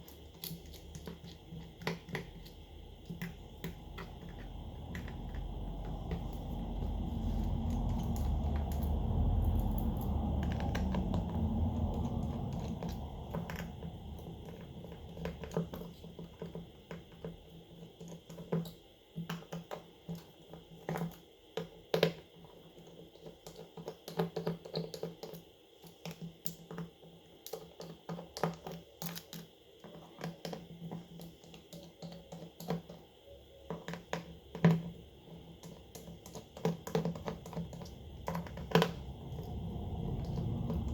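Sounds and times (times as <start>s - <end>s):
small tools clicking and tapping: 0.0s - 40.9s
low rushing noise: 4.6s - 13.3s, 38.9s - 40.9s.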